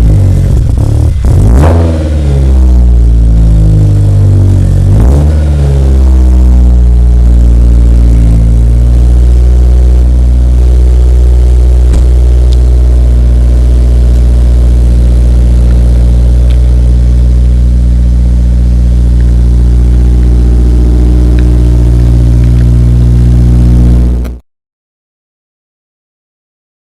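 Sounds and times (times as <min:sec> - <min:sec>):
car engine idling: 0:00.0 - 0:24.3.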